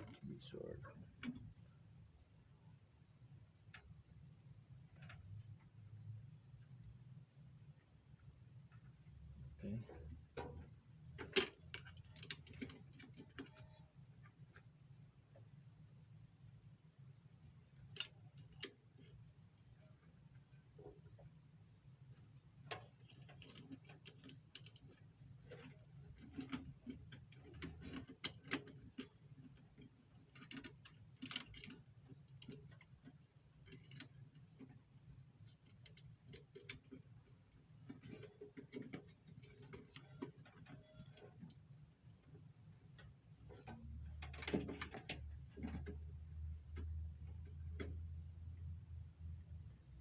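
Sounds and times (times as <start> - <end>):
low steady hum: 0.0 - 50.0
light clicks and taps of wiring work: 9.7 - 15.5, 17.6 - 21.3, 22.1 - 49.4.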